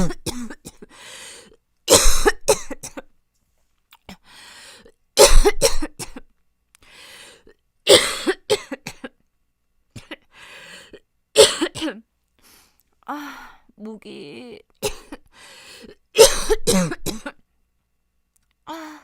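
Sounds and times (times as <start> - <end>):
woman coughing harshly: 0.0 - 0.9, 1.9 - 3.1, 5.2 - 6.3, 7.9 - 9.2, 10.0 - 10.3, 11.4 - 12.1, 14.8 - 15.3, 16.2 - 17.4.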